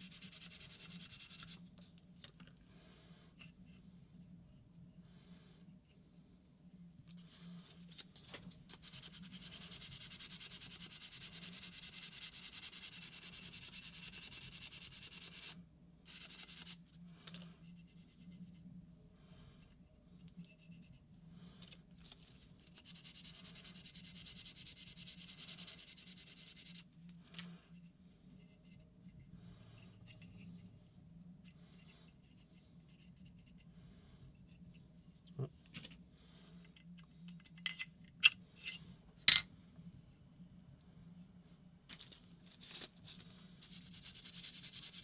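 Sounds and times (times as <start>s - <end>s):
sandpaper rubbing on rod: 0.0s - 1.6s, 8.8s - 16.8s, 43.6s - 45.0s.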